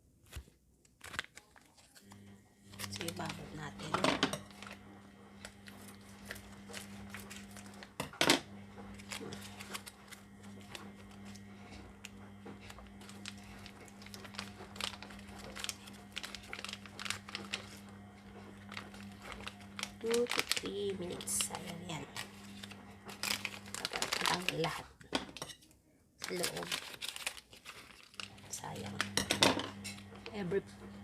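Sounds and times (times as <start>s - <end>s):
plastic packet crinkling: 0.3s - 8.1s, 8.8s - 25.5s, 26.2s - 30.4s
steady low hum: 2.0s - 24.2s.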